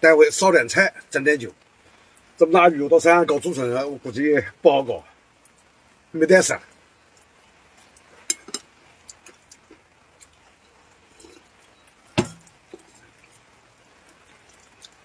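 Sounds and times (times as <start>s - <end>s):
cups and tableware clinking: 8.3s - 8.7s.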